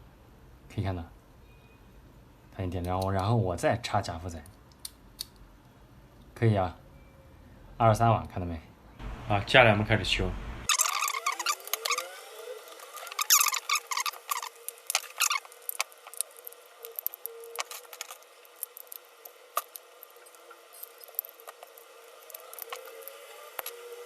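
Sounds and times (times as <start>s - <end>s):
plastic squeaking and creaking: 10.7s - 24.0s.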